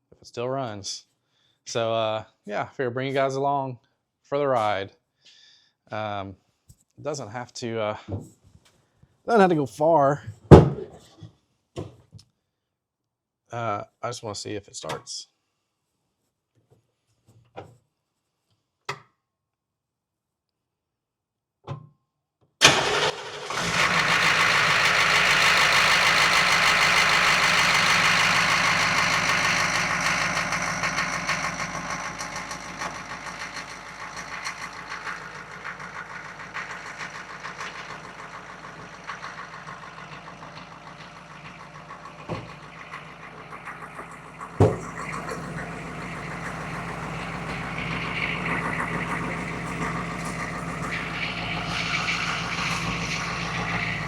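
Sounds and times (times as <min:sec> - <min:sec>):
diesel engine starting and idling: 0:22.6 - 0:54.0
sharp knocks: 0:44.6 - 0:45.5.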